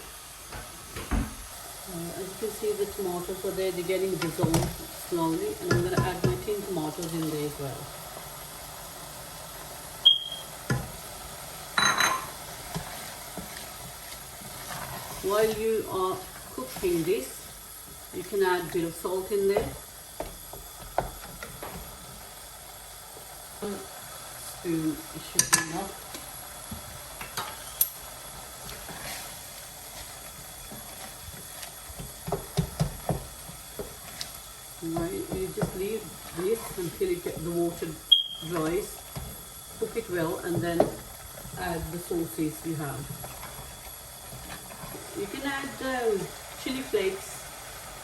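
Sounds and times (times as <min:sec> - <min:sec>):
faint steady hiss: 0:00.0 - 0:48.0
spoon stirring in a pan: 0:02.4 - 0:22.3, 0:25.2 - 0:46.9
high electronic beep: 0:10.0 - 0:10.4, 0:38.1 - 0:38.5
clatter of utensils: 0:25.4 - 0:25.8.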